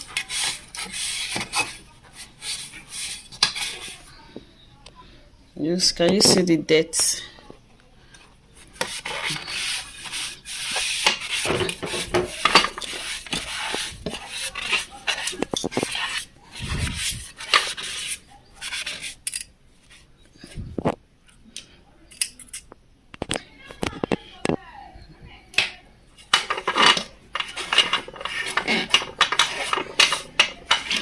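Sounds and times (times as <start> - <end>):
scrubbing and scraping metal reservoir: 0.0 - 4.1, 8.6 - 19.4, 26.2 - 31.0.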